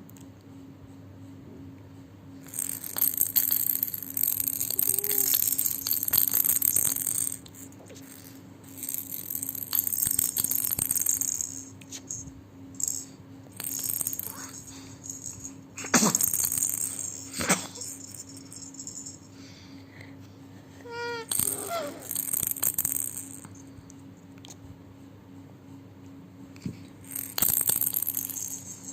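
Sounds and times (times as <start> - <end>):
toy rattle shaken: 2.4 - 19.4, 20.9 - 23.7, 27.0 - 28.9.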